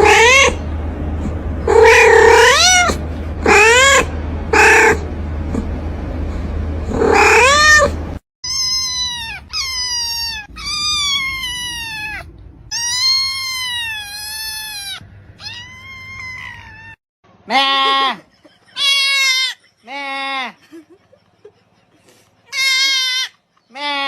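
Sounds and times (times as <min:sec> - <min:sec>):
cat meowing: 0:00.0 - 0:00.6, 0:01.7 - 0:05.0, 0:07.0 - 0:18.0, 0:22.5 - 0:24.0.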